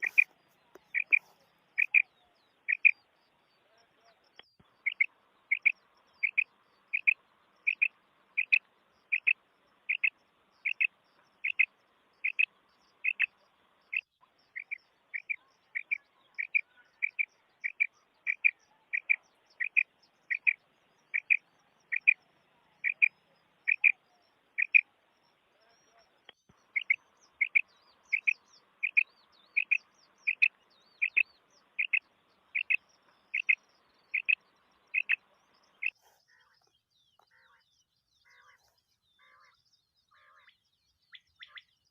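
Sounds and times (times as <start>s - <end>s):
quail calling: 0.0s - 2.1s, 2.7s - 3.0s, 4.8s - 13.3s, 13.9s - 22.2s, 22.8s - 24.0s, 24.6s - 24.9s, 26.7s - 36.6s
bird chirping: 0.0s - 41.9s.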